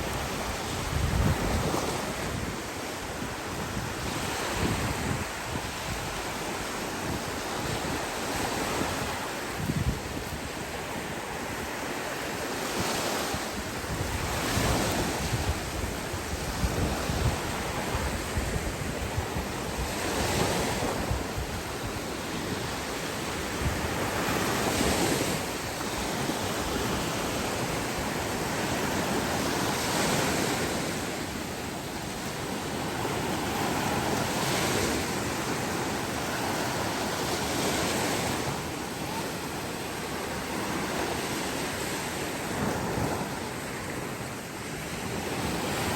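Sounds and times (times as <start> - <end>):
ocean waves breaking: 0.0 - 45.9
wind buffeting microphone: 0.0 - 45.9.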